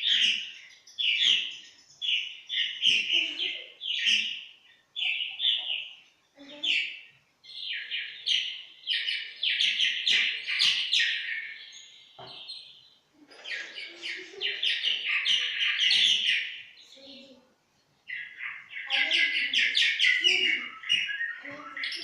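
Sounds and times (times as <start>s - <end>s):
swallow twittering: 0.0s - 12.6s, 13.2s - 17.2s, 18.1s - 22.0s.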